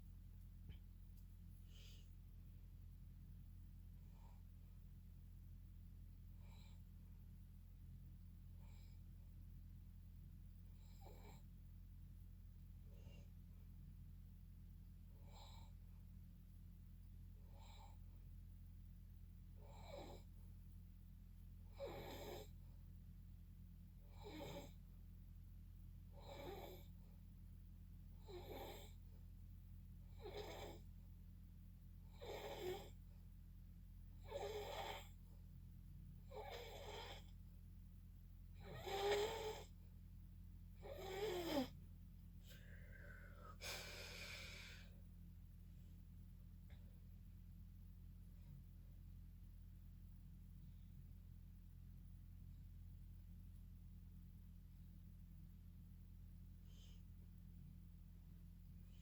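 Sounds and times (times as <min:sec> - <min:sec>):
steady low hum: 0:00.0 - 0:59.0
person snoring: 0:34.3 - 0:35.1, 0:36.3 - 0:37.3, 0:38.6 - 0:39.7, 0:40.8 - 0:41.7, 0:42.5 - 0:44.9.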